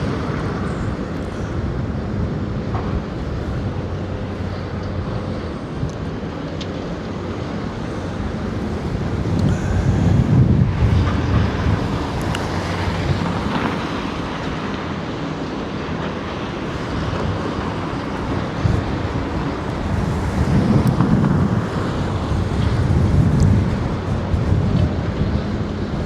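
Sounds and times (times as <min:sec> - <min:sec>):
excavators rumbling: 0:00.0 - 0:26.0
wind buffeting microphone: 0:00.0 - 0:26.0.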